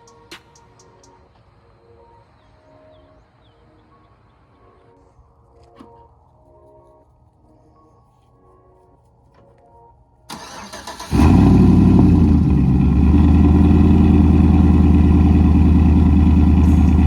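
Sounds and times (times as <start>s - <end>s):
engine idling: 10.4s - 17.0s.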